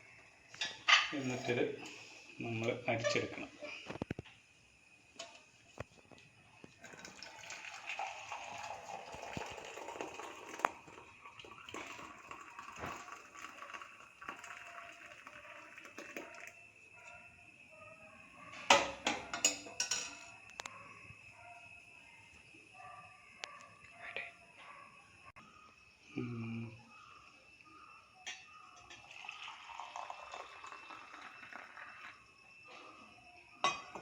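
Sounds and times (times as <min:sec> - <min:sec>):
tea pouring through strainer: 0:06.8 - 0:16.6, 0:29.0 - 0:32.3.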